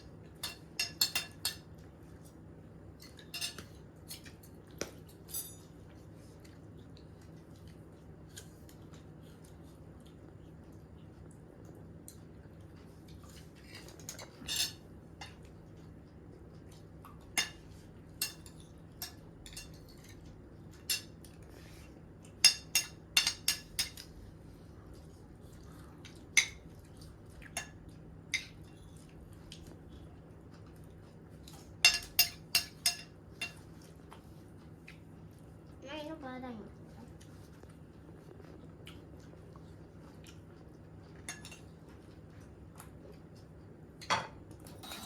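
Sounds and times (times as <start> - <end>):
dishes and utensils clinking: 0.4 - 1.7, 3.0 - 4.5, 5.1 - 5.7, 13.8 - 15.4, 17.3 - 21.2, 22.4 - 24.1, 31.8 - 33.6, 41.2 - 41.7, 44.0 - 45.0.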